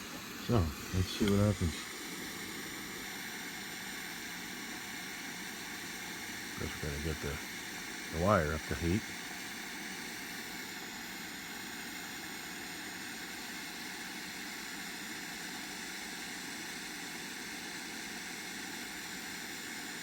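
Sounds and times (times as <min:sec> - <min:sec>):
gas torch hissing: 0:00.0 - 0:09.0.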